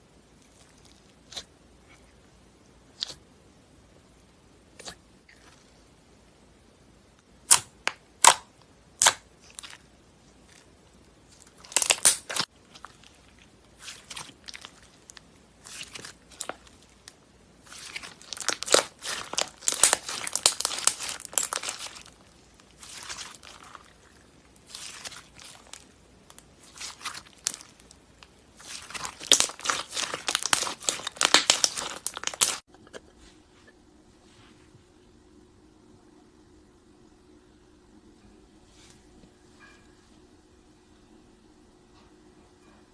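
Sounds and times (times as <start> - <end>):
slime crackling and popping: 7.4 - 10.7, 11.3 - 32.7
slime popping: 11.3 - 32.6.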